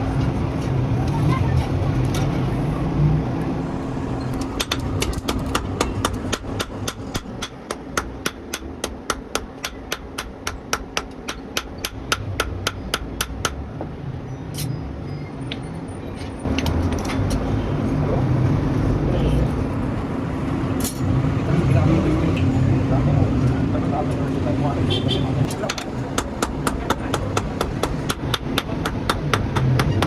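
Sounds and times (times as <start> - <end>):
hammer striking steel on anvil: 4.5 - 13.6.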